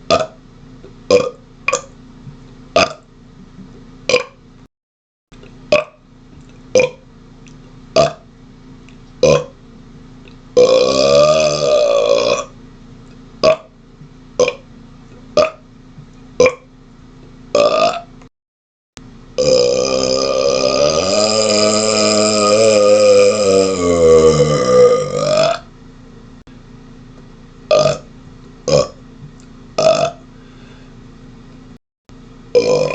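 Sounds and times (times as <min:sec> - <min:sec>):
man burping: 0:09.2 - 0:09.5, 0:10.6 - 0:12.5, 0:17.6 - 0:18.1, 0:19.4 - 0:25.7, 0:27.7 - 0:28.0, 0:28.7 - 0:29.0, 0:29.8 - 0:30.2, 0:32.6 - 0:32.9.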